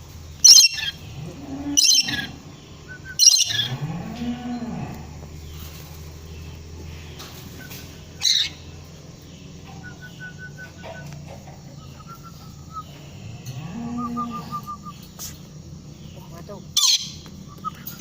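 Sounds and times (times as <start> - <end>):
parrot high chirping: 0.4 - 1.0, 3.2 - 3.7, 8.2 - 8.6, 16.8 - 17.3
parrot low drawn-out call: 0.4 - 2.5.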